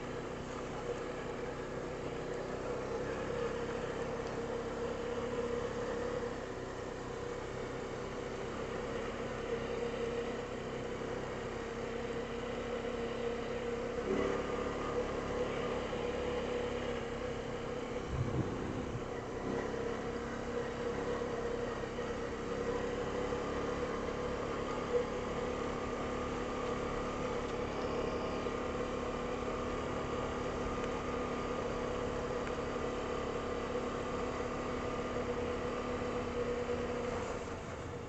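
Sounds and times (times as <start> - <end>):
quad bike engine running: 0.0 - 38.0.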